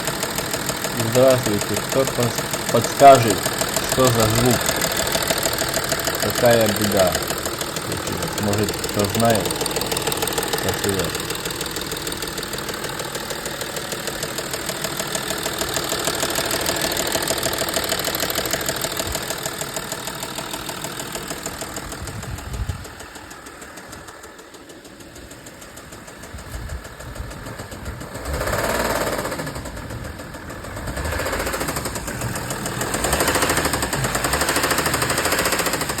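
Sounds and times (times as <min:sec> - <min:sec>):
diesel engine knocking: 0:00.0 - 0:36.0.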